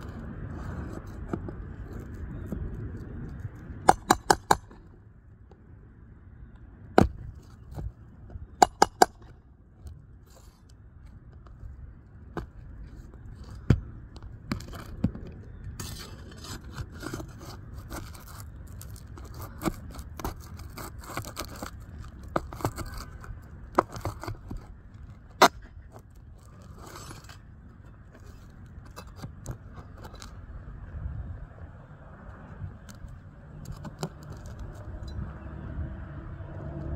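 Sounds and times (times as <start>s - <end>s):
scraping and rustling: 10.2s - 30.4s.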